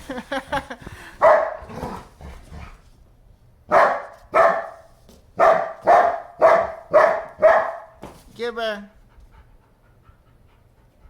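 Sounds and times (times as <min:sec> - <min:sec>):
dog barking: 0:01.2 - 0:02.0, 0:03.7 - 0:08.0.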